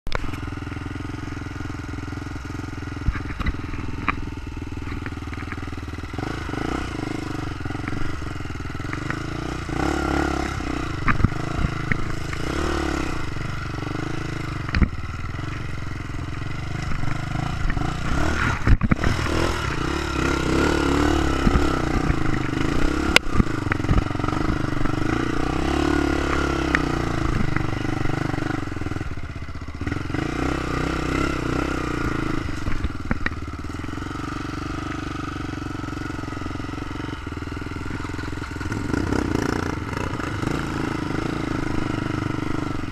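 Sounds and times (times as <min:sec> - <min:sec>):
motorcycle engine revving: 0:00.1 - 0:42.9
sharp knocks and rattles: 0:16.7 - 0:25.3, 0:36.0 - 0:41.3.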